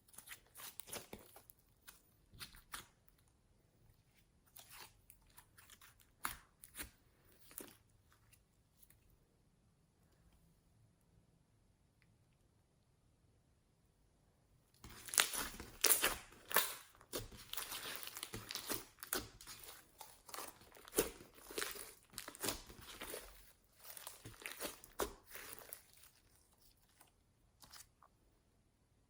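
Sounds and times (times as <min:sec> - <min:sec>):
slime crackling and popping: 0:14.8 - 0:26.2.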